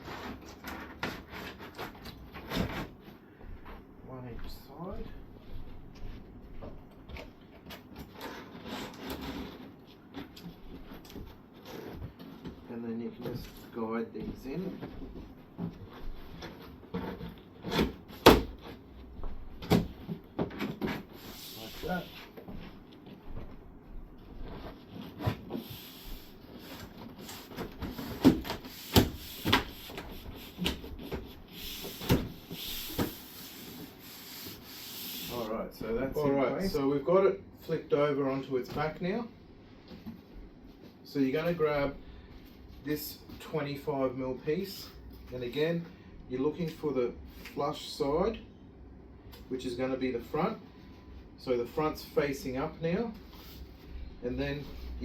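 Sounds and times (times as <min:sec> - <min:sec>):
cardboard scraping and rubbing: 0:00.0 - 0:03.0, 0:08.1 - 0:13.3, 0:19.8 - 0:22.4, 0:24.3 - 0:36.4
cardboard knocks and thumps: 0:26.7 - 0:33.3.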